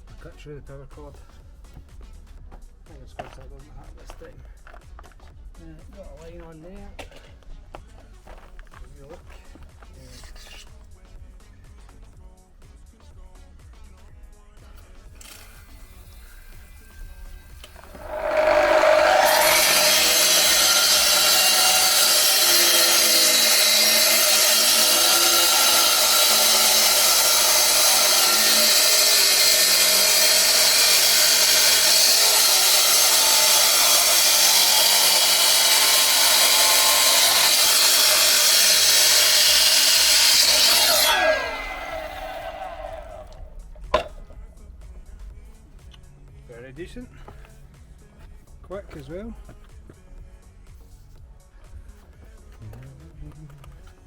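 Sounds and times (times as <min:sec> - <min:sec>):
electric block cutter cutting concrete: 0:17.5 - 0:43.4.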